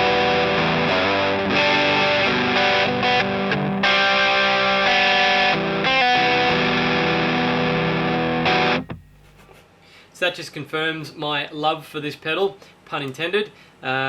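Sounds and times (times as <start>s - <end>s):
distorted electric guitar chords: 0.0s - 9.3s.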